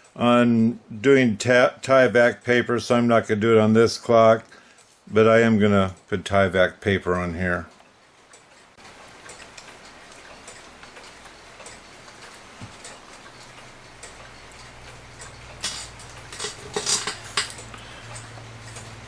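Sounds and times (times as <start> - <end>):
mechanical clock ticking: 4.8 - 19.0
small parts clicking and clattering: 8.3 - 19.0.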